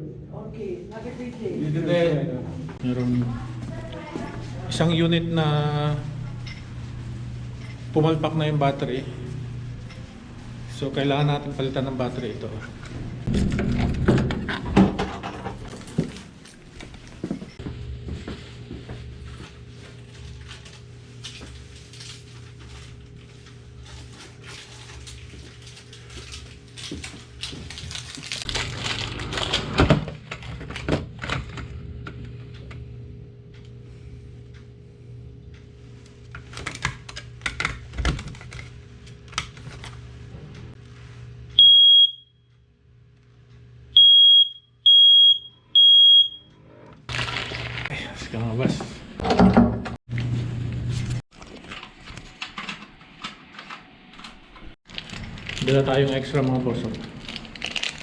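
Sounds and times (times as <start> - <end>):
high-pitched smoke alarm beeps: 41.6 - 42.4, 44.0 - 46.5.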